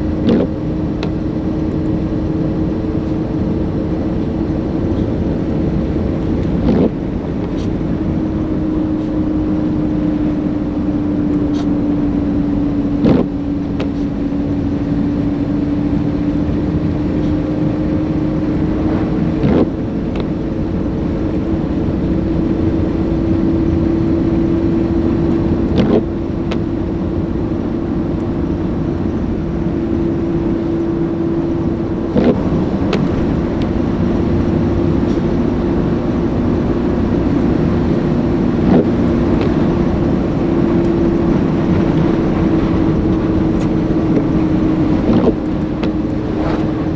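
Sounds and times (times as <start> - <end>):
car engine and road drone: 0.0 - 46.9
rising hum: 15.0 - 20.7, 32.0 - 46.9.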